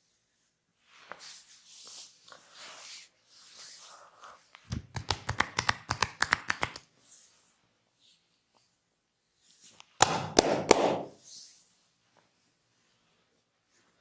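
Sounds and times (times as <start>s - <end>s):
hands rubbing over skin: 1.0s - 6.9s
rapid hand slaps on skin: 4.7s - 6.9s, 10.0s - 11.2s.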